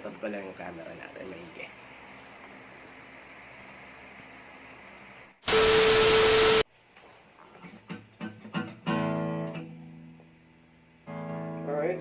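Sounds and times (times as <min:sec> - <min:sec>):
static burst with steady tone: 0:05.0 - 0:06.6.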